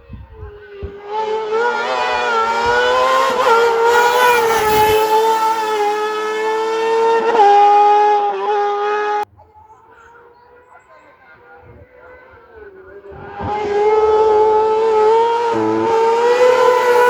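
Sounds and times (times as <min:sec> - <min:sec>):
rally car engine at high revs: 0:00.5 - 0:09.2, 0:13.0 - 0:17.0.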